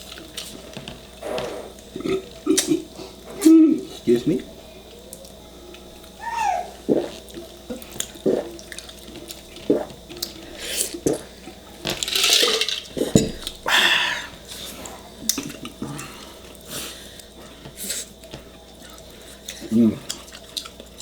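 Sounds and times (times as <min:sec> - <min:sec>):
slurping: 0:06.6 - 0:11.4
wet chewing and smacks: 0:06.9 - 0:11.2, 0:17.2 - 0:21.0.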